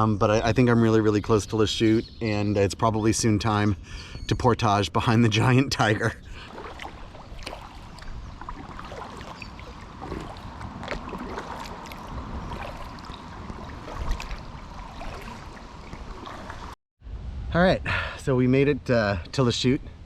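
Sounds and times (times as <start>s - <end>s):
kayak paddle splashing in water: 6.2s - 16.8s.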